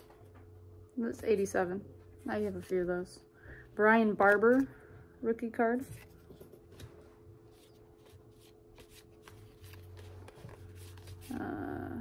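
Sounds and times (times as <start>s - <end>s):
cards being flipped: 4.1s - 4.8s, 5.9s - 11.4s.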